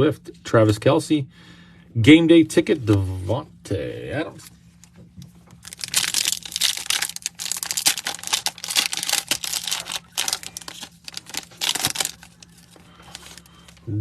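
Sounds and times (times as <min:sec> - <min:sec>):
foil wrapper tearing and crinkling: 0:05.5 - 0:13.8.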